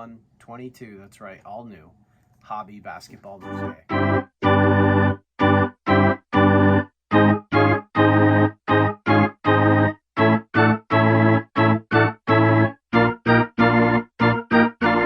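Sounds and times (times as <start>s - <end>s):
organ-like keyboard chords: 3.3s - 15.0s.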